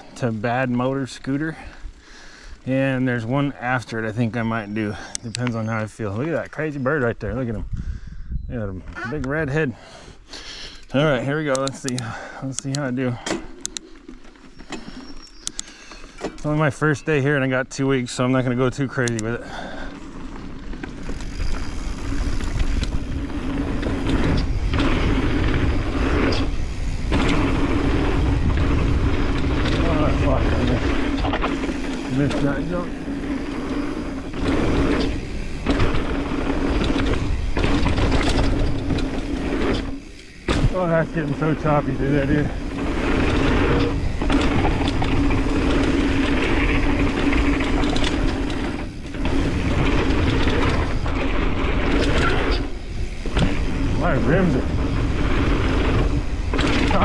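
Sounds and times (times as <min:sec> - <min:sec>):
wind buffeting microphone: 0:06.0 - 0:08.9, 0:20.2 - 0:57.0
bike frame and chain rattling: 0:10.9 - 0:17.0, 0:17.8 - 0:57.0
tyres rolling over dirt and rocks: 0:10.9 - 0:57.0.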